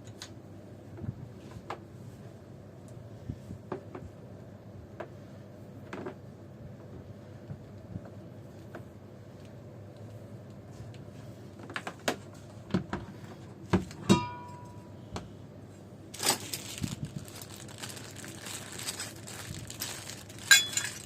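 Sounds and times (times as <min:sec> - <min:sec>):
struck metal ring: 0:14.0 - 0:15.0
scraping and rustling: 0:16.1 - 0:21.0.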